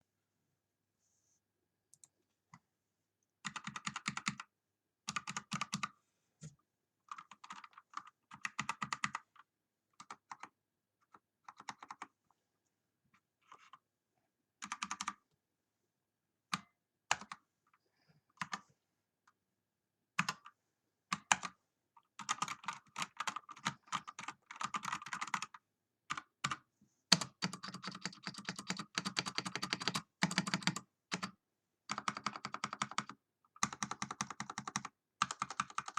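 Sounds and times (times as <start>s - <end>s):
mechanical keyboard typing: 3.4s - 4.5s, 5.1s - 5.9s, 7.1s - 9.4s, 10.0s - 12.1s, 14.6s - 15.2s, 16.5s - 17.4s, 20.2s - 20.5s, 21.1s - 35.9s.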